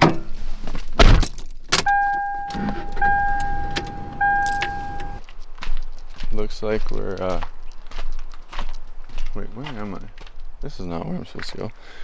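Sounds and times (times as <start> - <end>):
vehicle door thump: 0.9 - 5.2
electronic warning chime: 1.8 - 5.2.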